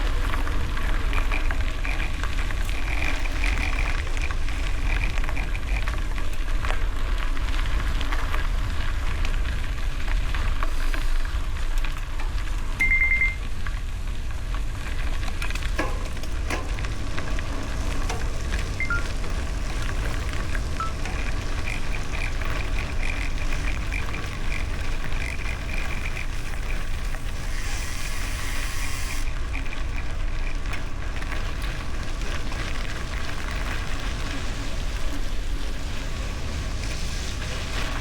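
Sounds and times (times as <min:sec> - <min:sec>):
bike tyres crunching on gravel: 0:00.0 - 0:38.0.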